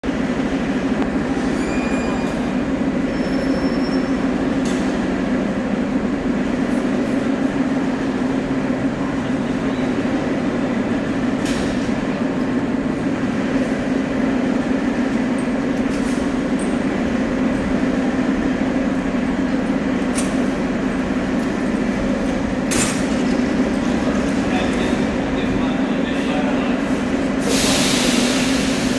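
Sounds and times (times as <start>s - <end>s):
metro train rumbling: 0.0s - 28.9s.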